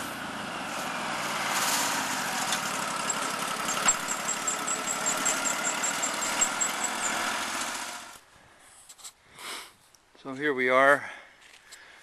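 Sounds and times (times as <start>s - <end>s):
sawmill engine running: 0.0s - 8.2s.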